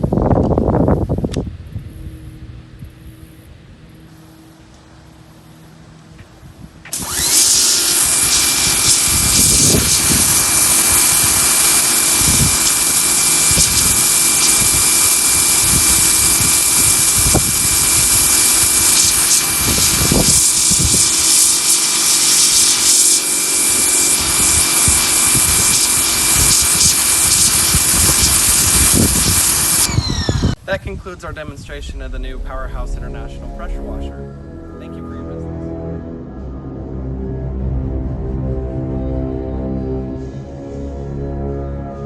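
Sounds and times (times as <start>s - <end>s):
high whine: 0.0s - 42.0s
pressure washer jet hissing: 6.9s - 30.6s
low thuds: 31.4s - 36.1s.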